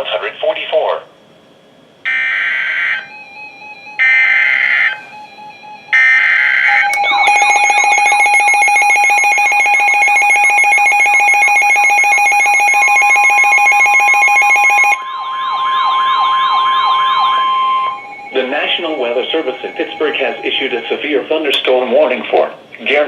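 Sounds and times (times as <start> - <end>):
alert tone with siren sweeps: 2.1 - 21.2
screechy digital header tones: 5.9 - 21.2.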